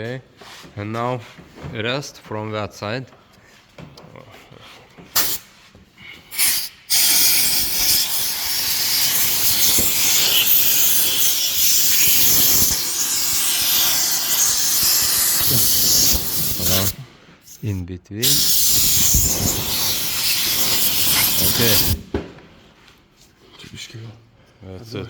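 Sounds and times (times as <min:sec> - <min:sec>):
compressed air blow gun hissing: 0:05.2 - 0:05.5, 0:06.3 - 0:17.0, 0:18.2 - 0:22.0.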